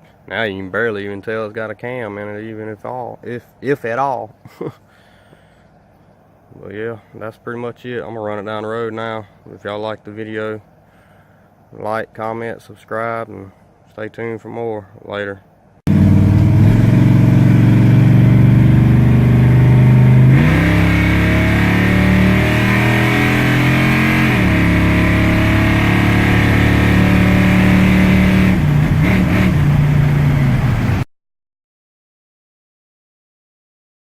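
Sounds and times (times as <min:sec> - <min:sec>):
pickup truck engine driving off: 0:15.9 - 0:31.0.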